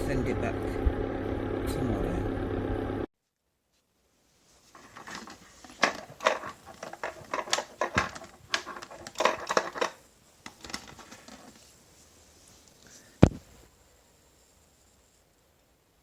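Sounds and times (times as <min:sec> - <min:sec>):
clicks and knocks of handling: 0:04.7 - 0:11.7.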